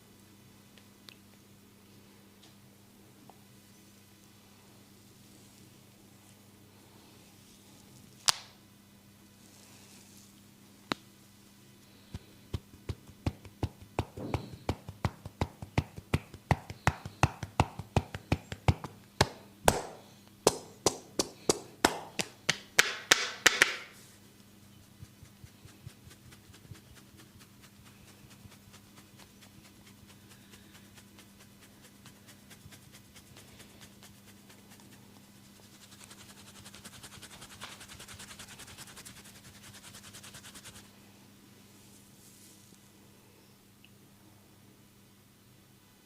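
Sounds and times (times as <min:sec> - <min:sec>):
hands tapping on a head: 0:12.1 - 0:23.9.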